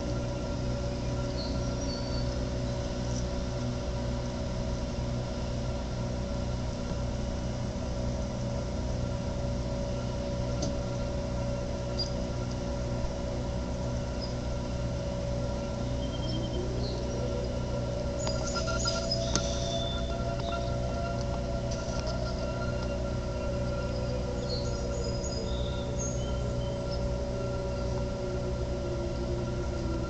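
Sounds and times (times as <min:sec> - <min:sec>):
pumping station humming drone: 0:00.0 - 0:30.0
faint high chirps: 0:15.4 - 0:30.0.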